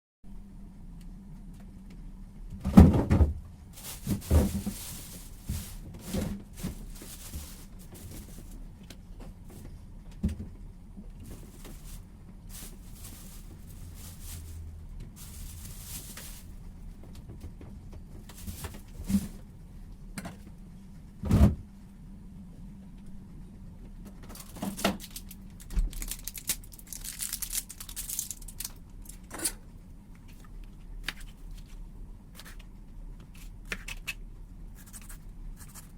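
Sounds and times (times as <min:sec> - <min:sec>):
steady low hum: 0:00.3 - 0:25.7, 0:27.6 - 0:35.9
short rustles: 0:03.8 - 0:08.6, 0:11.2 - 0:16.6, 0:18.2 - 0:19.4.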